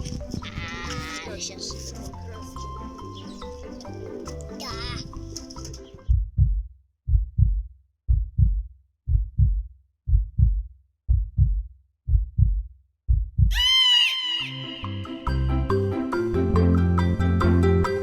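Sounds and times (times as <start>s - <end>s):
heartbeat thumps: 0.0s - 1.2s, 6.0s - 13.6s.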